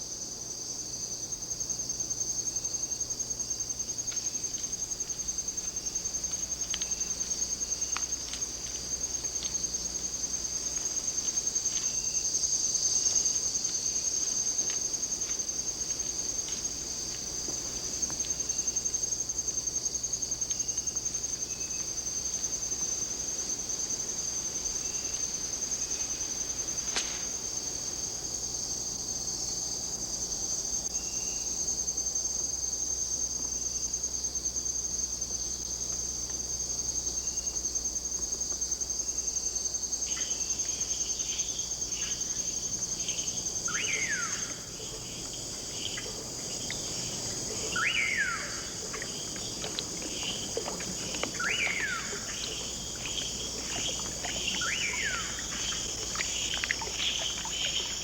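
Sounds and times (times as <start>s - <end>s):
insects trilling: 0.0s - 58.0s
faint ticks: 4.1s - 10.0s, 13.0s - 18.8s, 44.8s - 58.0s.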